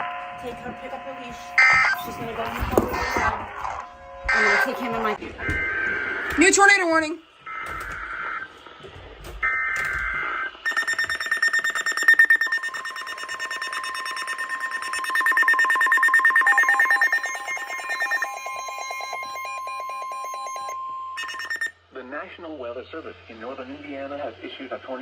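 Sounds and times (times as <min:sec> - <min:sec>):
steady high tone: 0:00.0 - 0:07.2, 0:10.7 - 0:21.7
two-tone alert blasts: 0:00.0 - 0:08.4, 0:09.4 - 0:21.7
harsh pulsing alarm: 0:00.0 - 0:21.9.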